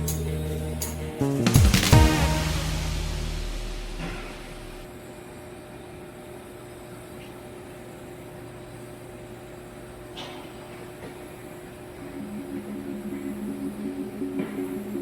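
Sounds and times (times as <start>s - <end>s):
music track: 0.0s - 4.9s, 12.1s - 15.0s.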